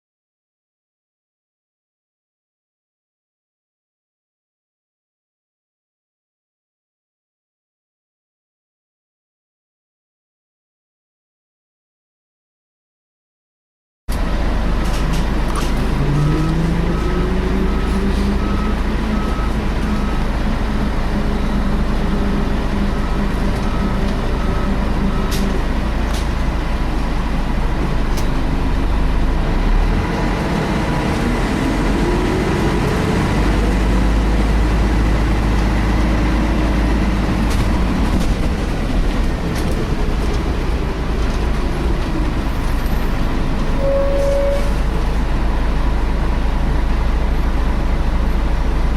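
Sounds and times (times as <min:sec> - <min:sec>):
bus engine running: 0:14.1 - 0:48.9.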